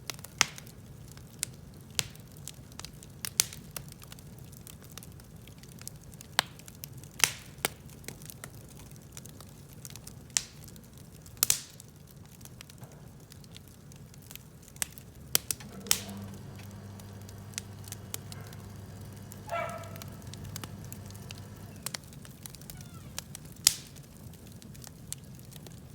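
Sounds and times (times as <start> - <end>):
wood fire crackling and popping: 0.0 - 25.9
low steady hum: 15.5 - 22.0.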